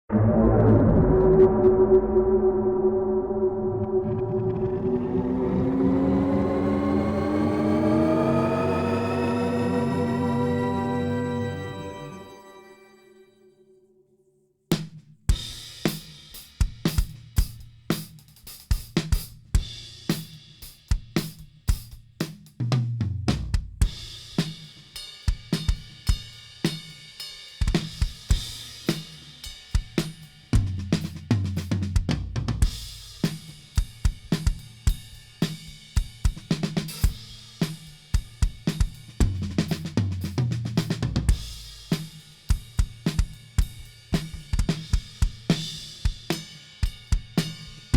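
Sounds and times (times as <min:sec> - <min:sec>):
drum kit groove: 0:14.7 - 0:47.9.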